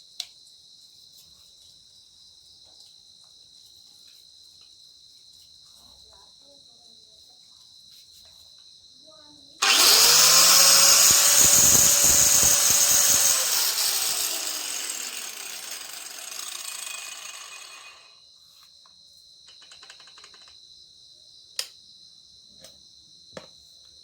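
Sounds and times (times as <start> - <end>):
angle grinder whining: 9.6 - 18.1.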